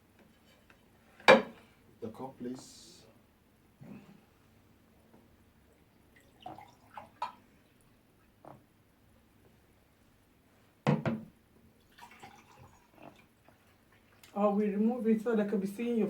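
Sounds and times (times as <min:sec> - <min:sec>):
cup set down on table: 0:01.2 - 0:01.6, 0:10.9 - 0:11.3.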